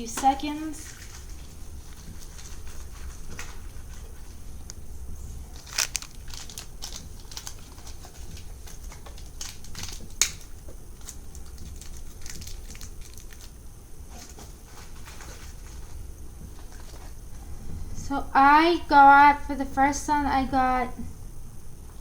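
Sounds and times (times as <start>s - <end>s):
toy packaging crinkling: 5.6s - 13.6s.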